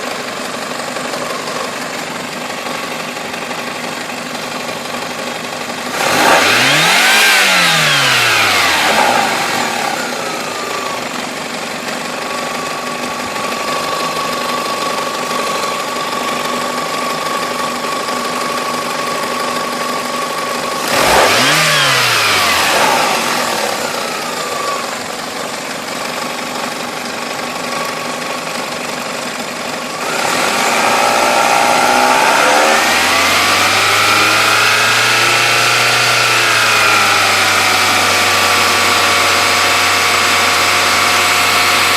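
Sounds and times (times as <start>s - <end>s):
car engine idling and revving: 0.0s - 41.9s.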